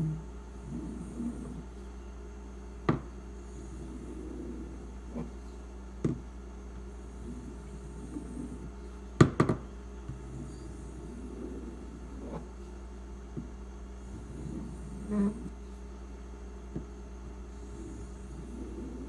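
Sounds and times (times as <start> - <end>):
steady low hum: 0.0 - 19.0
sharp knocks on bench: 9.2 - 9.6.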